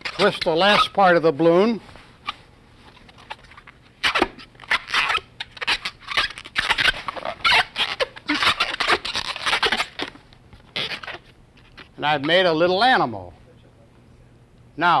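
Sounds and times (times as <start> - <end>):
balloon squeaking and crackling: 0.0 - 1.2, 2.2 - 12.5.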